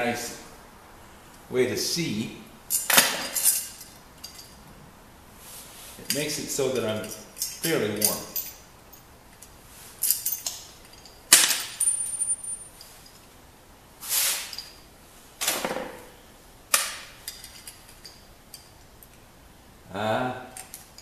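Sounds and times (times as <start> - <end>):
metal lock parts clicking: 20.5 - 21.0.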